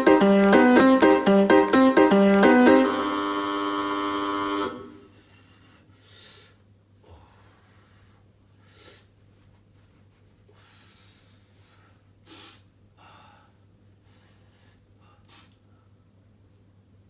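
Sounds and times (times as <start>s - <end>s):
buzzing horn-like chord: 0.0s - 5.1s.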